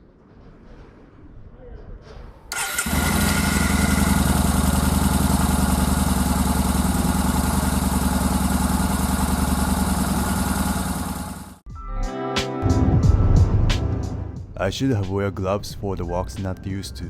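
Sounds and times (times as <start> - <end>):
motorcycle engine idling: 2.6 - 11.6.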